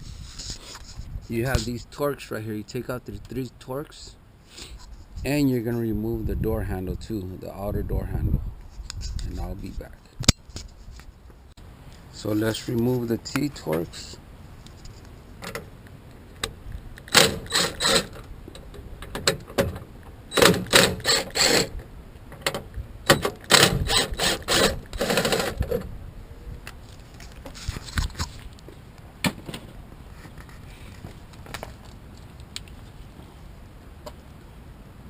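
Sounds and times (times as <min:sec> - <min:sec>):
hand tool clicking and rasping: 0:17.0 - 0:18.2, 0:20.3 - 0:21.7.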